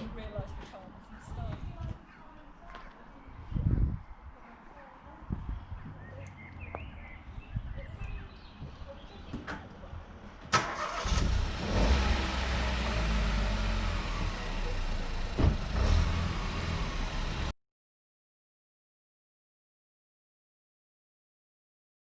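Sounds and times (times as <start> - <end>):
car engine cranking: 10.5 - 17.5
car engine idling: 10.6 - 17.5.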